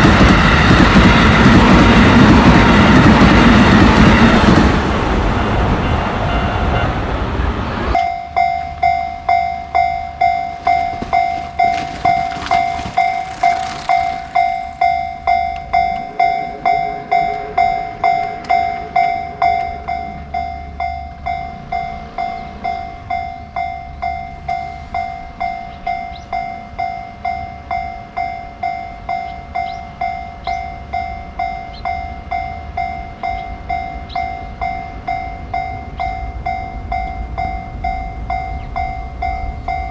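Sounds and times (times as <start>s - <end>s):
passing train rushing: 0.0s - 39.9s
level crossing electronic bell: 8.0s - 39.9s.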